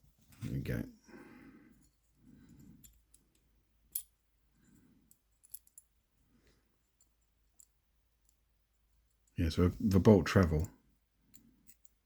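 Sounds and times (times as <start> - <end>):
soft handling noise: 0.0 - 0.8
small lock parts clicking: 11.3 - 12.0.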